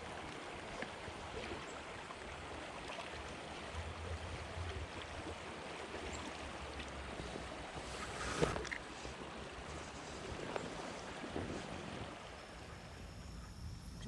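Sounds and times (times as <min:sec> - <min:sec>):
running creek water: 0:00.0 - 0:14.0.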